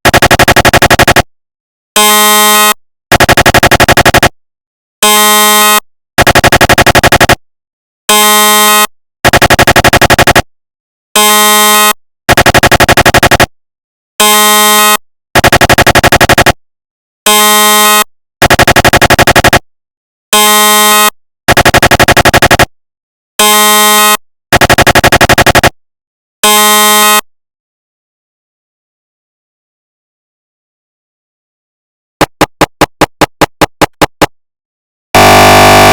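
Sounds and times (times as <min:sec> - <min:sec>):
steady buzzing tone: 0:35.2 - 0:35.9.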